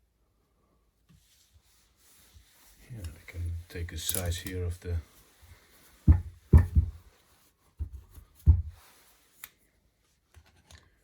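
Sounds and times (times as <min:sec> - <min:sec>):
faint taps: 0:06.1 - 0:07.0
steel vise knocking on bench: 0:06.1 - 0:07.0, 0:08.5 - 0:08.8.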